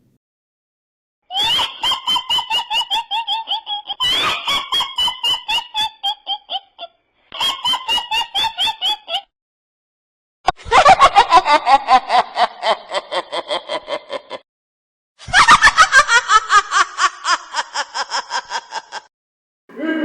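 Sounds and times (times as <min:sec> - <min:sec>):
witch cackling: 0:19.7 - 0:20.0.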